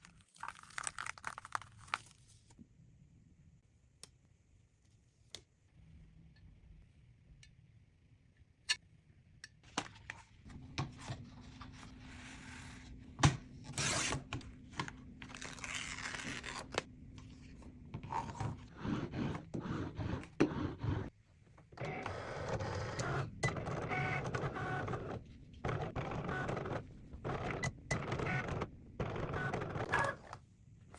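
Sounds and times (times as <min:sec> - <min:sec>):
paper scraping and crinkling: 0:15.2 - 0:21.1.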